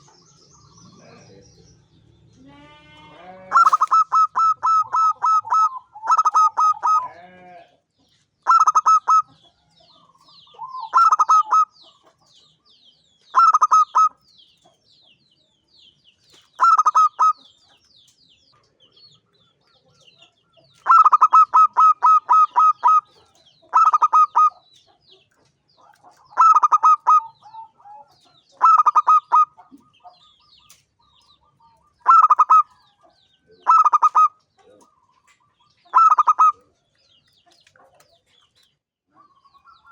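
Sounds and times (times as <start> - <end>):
dove staccato coos: 3.5 - 7.1, 10.6 - 11.7, 16.6 - 17.4, 20.8 - 23.1, 23.7 - 24.6, 25.8 - 29.9, 32.0 - 32.8, 33.6 - 36.6.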